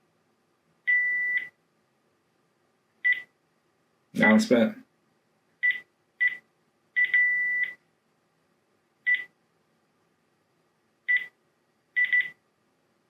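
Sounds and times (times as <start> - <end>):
phone key beeps: 3.1 - 3.3, 5.6 - 6.4, 7.0 - 7.8, 9.1 - 9.3, 11.1 - 11.3, 12.0 - 12.4.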